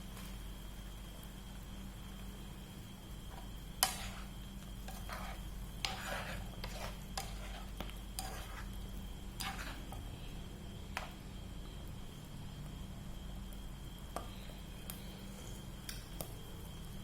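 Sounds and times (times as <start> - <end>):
low steady hum: 0.0 - 17.0
utensil scraping and knocking a pot: 3.3 - 8.7, 9.4 - 10.0.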